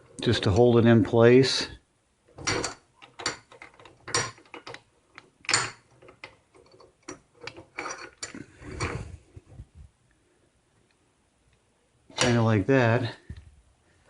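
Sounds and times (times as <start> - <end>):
metal cable clunks and scrapes: 2.4 - 4.8, 5.6 - 9.2.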